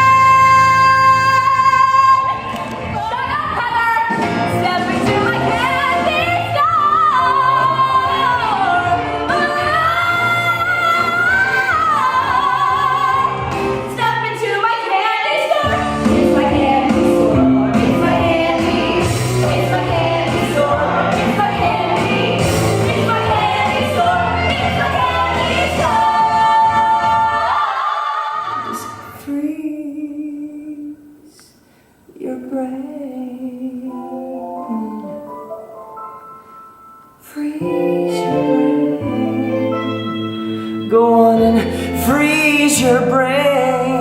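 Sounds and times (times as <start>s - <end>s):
backing music with bass line: 15.6s - 27.6s
person singing with accompaniment: 37.2s - 44.0s.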